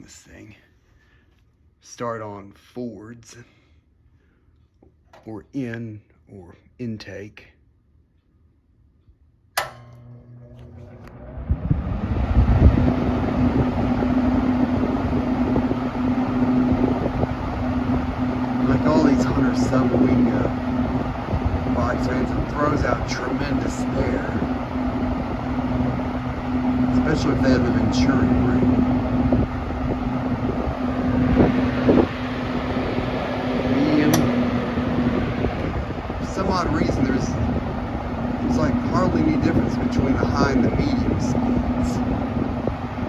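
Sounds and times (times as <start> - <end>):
fan motor hum: 9.5 - 43.0
sharp click: 9.6 - 10.2, 34.1 - 34.4
box fan air rush: 9.6 - 43.0.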